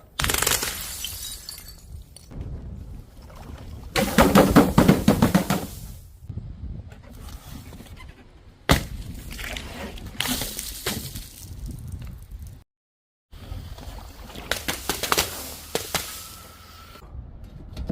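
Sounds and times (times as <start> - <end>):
sharp crack: 0.0 - 1.0, 14.4 - 16.2
glass bottles smashing: 0.3 - 2.3.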